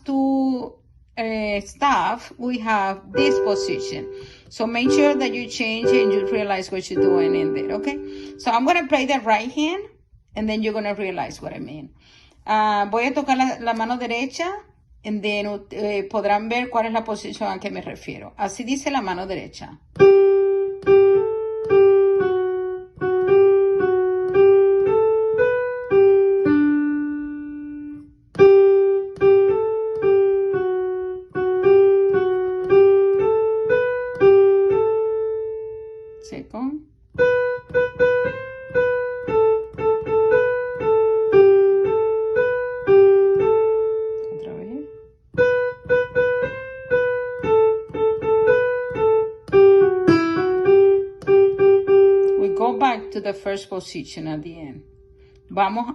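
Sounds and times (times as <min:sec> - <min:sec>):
piano melody: 0:02.2 - 0:09.6, 0:19.0 - 0:55.4.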